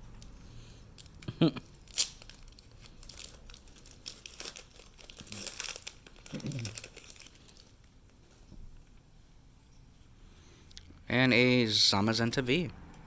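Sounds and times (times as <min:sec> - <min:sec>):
foil wrapper crinkling: 0:01.0 - 0:08.0.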